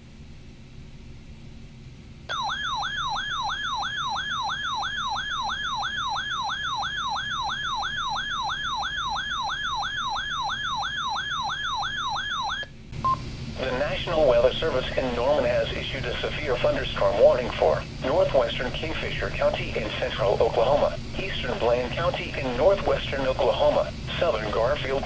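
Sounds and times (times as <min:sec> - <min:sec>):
faint hiss and hum: 0:00.0 - 0:25.0
warbling alarm siren tone: 0:02.3 - 0:12.7.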